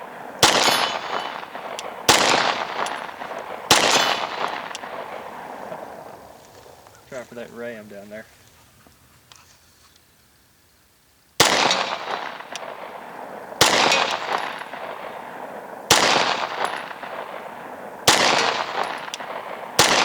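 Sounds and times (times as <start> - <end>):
pistol shots echoing: 0.0 - 6.7, 11.4 - 20.0.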